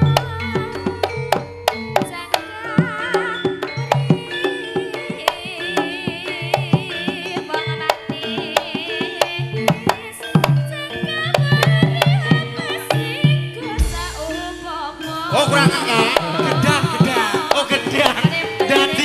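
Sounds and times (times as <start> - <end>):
held gamelan tones: 0.0 - 19.0
rapid hand-drum strokes: 0.0 - 19.0
high wavering melody: 10.7 - 19.0.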